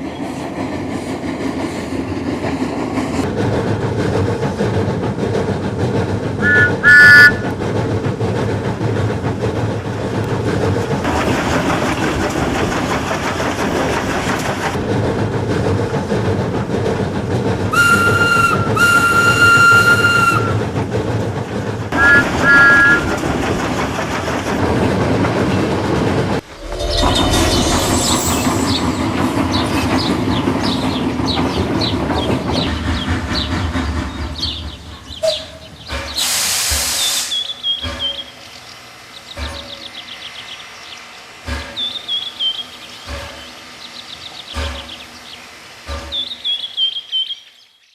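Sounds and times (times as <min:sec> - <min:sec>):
steam locomotive rumble and clatter: 0:00.0 - 0:47.9
two-note train whistle: 0:06.4 - 0:07.5, 0:17.7 - 0:20.6, 0:22.0 - 0:23.1.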